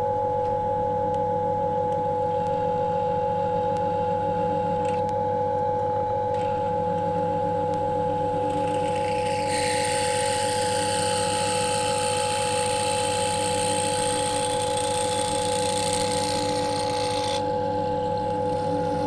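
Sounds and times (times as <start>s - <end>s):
drill press motor whine: 1.4s - 19.0s
drill bit cutting metal: 8.1s - 19.0s.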